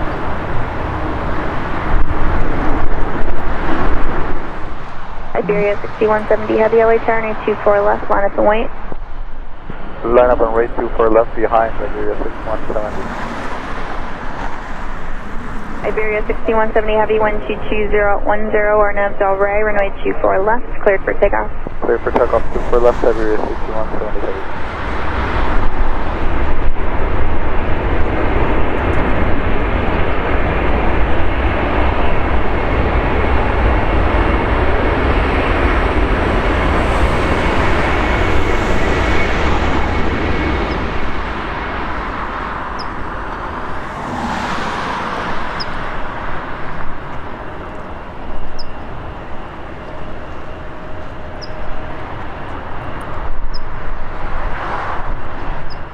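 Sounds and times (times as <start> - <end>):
jet engine roar: 0.0 - 55.9.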